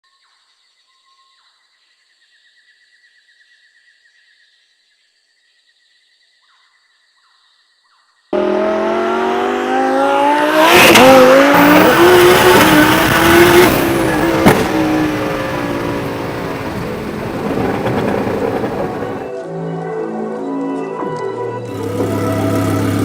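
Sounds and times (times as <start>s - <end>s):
sports car engine revving: 8.4s - 19.3s, 21.7s - 23.0s
sharp crack: 10.8s - 19.2s.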